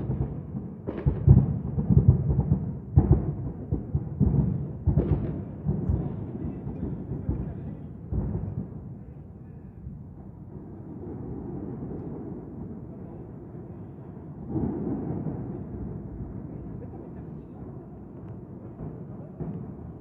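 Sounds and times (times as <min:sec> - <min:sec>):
fireworks bursting with deep booms: 0:00.0 - 0:20.0.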